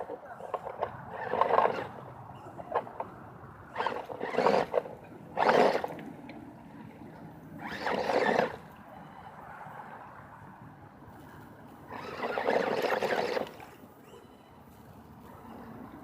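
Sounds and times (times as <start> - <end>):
toy truck motor whirring: 0.0 - 6.2, 7.6 - 8.8, 11.9 - 14.3.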